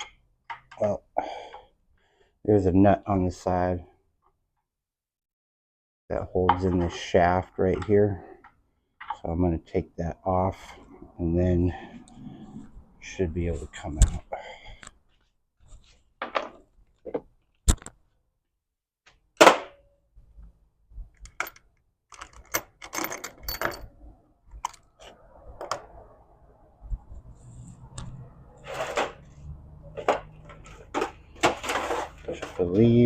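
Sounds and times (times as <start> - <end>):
metal tools clinking: 22.2 - 23.9.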